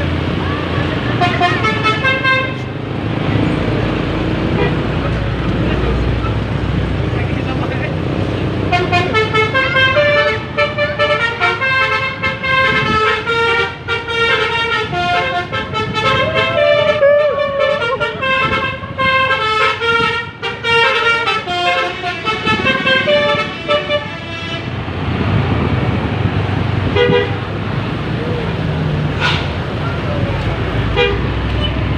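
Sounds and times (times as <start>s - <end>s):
multi-note air horns playing tunes: 8.7s - 24.8s.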